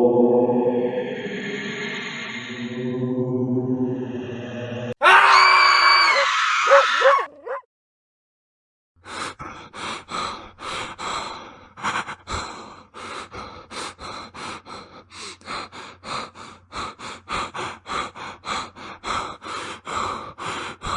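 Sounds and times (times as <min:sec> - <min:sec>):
harsh shriek with high whine: 0:05.0 - 0:07.1
heavy panting breaths: 0:09.0 - 0:20.9.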